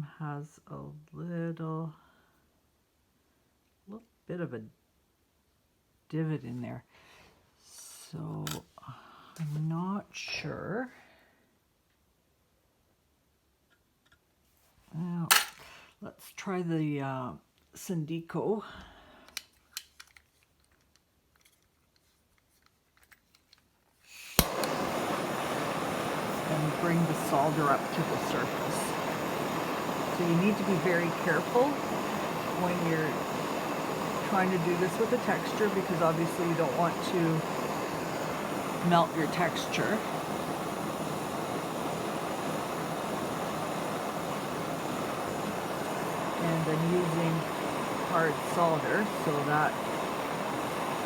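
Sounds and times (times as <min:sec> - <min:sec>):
torch igniting click: 0:15.3 - 0:15.6, 0:24.2 - 0:51.0
gas hissing: 0:24.1 - 0:51.0
torch flame rushing: 0:24.2 - 0:51.0.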